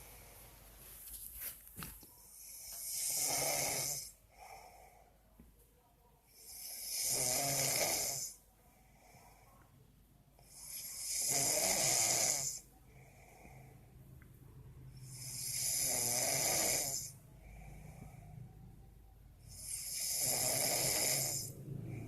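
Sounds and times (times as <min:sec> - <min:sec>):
soft breaths: 0:00.0 - 0:06.7, 0:08.2 - 0:11.8, 0:12.4 - 0:15.7, 0:16.4 - 0:22.0
person snoring: 0:02.4 - 0:04.2, 0:06.4 - 0:08.4, 0:10.4 - 0:13.8, 0:15.0 - 0:18.4, 0:19.5 - 0:22.0.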